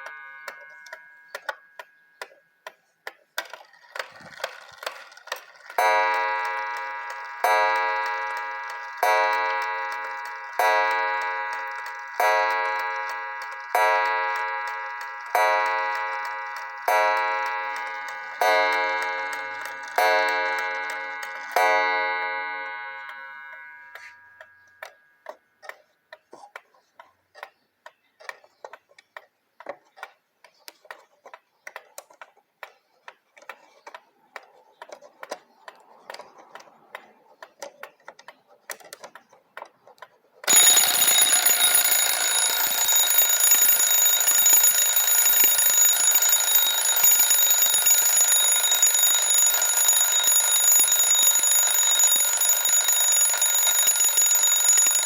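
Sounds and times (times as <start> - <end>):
alarm bell ringing: 0.0 - 1.9, 4.3 - 25.0, 40.5 - 55.0
alarm clock ticking: 0.0 - 2.8, 3.4 - 25.8, 40.4 - 55.0.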